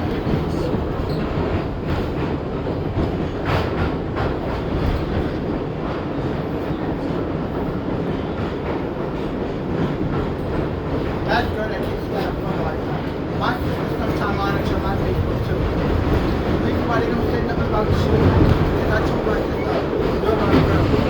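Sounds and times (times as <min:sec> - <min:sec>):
wheels rumbling on rails: 0:00.0 - 0:21.0
wheels clacking over rail joints: 0:09.6 - 0:21.0.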